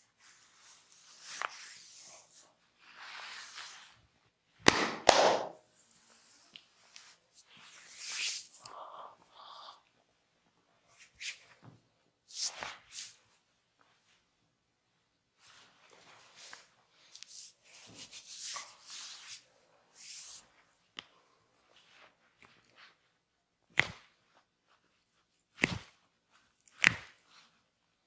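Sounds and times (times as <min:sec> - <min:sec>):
hands rubbing skin and hair: 0:00.2 - 0:04.0, 0:04.7 - 0:08.8, 0:12.3 - 0:14.2, 0:15.4 - 0:19.4, 0:20.0 - 0:27.7
sharp loud snaps: 0:04.6 - 0:05.6.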